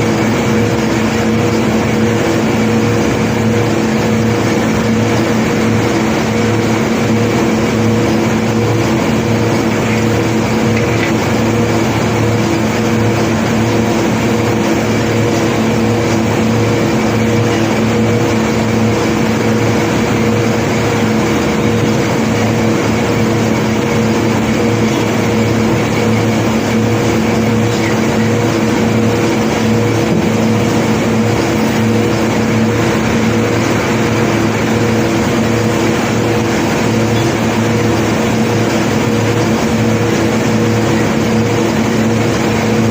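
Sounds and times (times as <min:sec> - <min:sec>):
large engine running steadily: 0:00.0 - 0:42.9.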